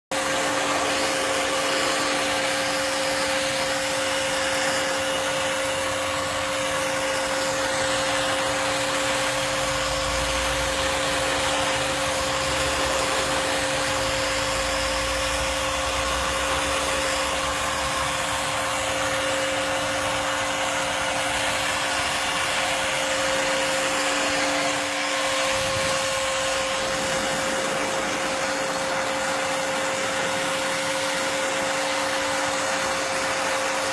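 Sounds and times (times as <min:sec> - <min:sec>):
heat gun blowing air: 0:00.1 - 0:33.9.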